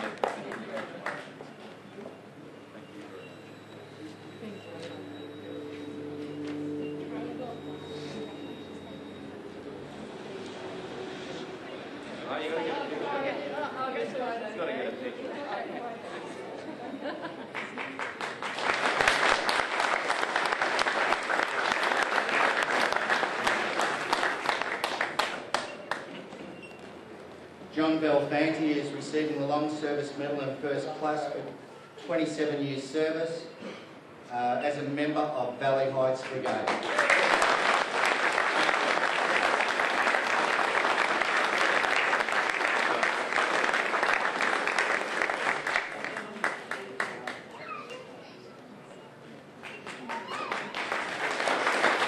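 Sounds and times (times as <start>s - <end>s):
audience applauding: 0.0s - 1.5s, 17.5s - 26.2s, 36.2s - 47.5s, 49.6s - 52.0s.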